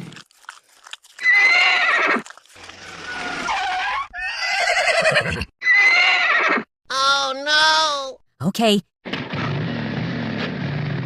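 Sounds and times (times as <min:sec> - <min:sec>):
horse whinnying: 0:01.2 - 0:06.7
vehicle engine: 0:09.4 - 0:11.0.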